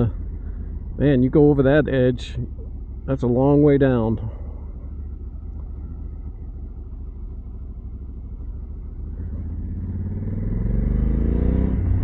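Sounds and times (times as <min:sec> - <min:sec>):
motorcycle engine accelerating: 0:04.3 - 0:12.0.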